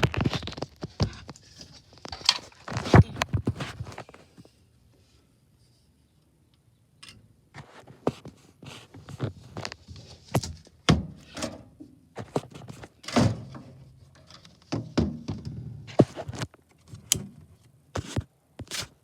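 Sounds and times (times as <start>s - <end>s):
knocks clicks and thunks: 14.6s - 17.4s.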